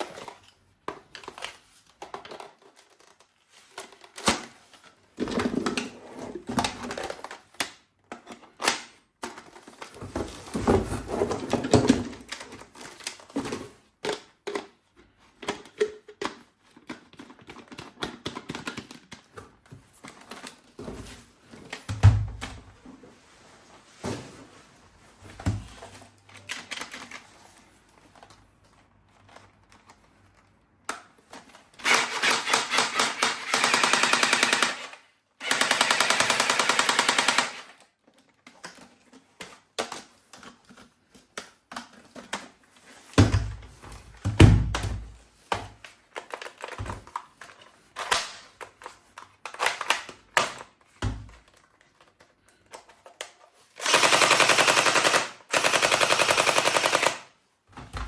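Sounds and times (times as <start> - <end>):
toys being handled: 0.0 - 44.3, 44.9 - 57.3
toy machine gun rattling: 31.8 - 37.8, 53.8 - 57.3.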